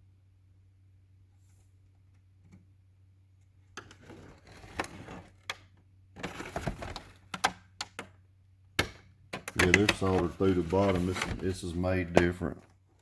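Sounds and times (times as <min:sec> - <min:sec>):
faint low hum: 0:00.0 - 0:07.4
objects rustling and scraping: 0:03.7 - 0:05.5, 0:06.1 - 0:07.4, 0:09.4 - 0:12.8.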